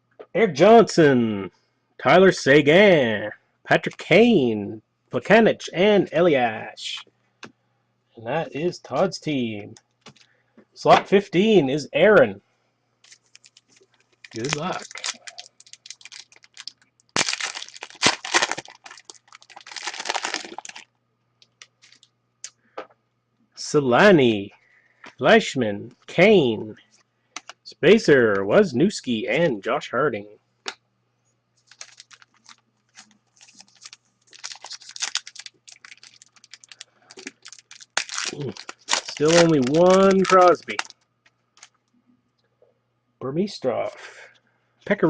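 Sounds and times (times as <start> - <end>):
faint low hum: 0.0 - 45.0
foil wrapper tearing and crinkling: 13.1 - 20.8, 21.7 - 22.1, 31.7 - 41.0.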